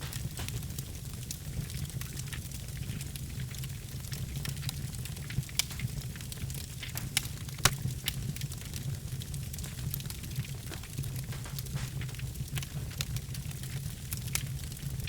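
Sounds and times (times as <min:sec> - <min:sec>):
burning wood crackling and popping: 0:00.0 - 0:15.0
fire rumbling: 0:00.0 - 0:15.0.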